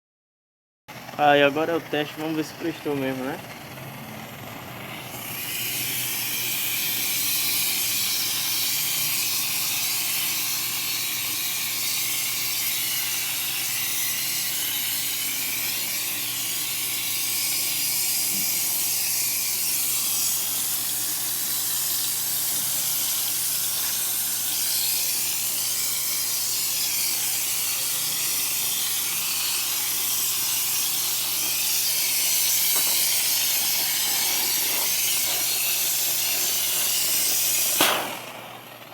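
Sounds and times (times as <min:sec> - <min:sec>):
compressor humming: 0:00.9 - 0:38.9
spray gun hissing: 0:17.5 - 0:38.3.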